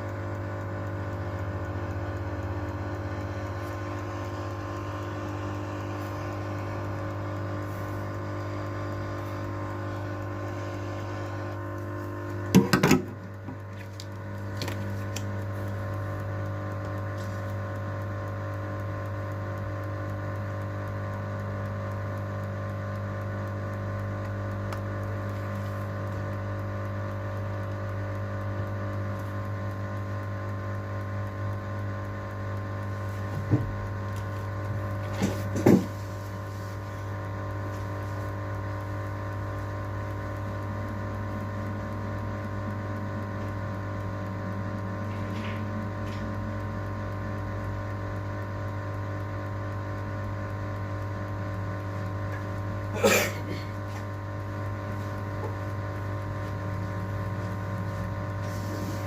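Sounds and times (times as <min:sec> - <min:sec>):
electrical hum: 0:00.0 - 0:59.0.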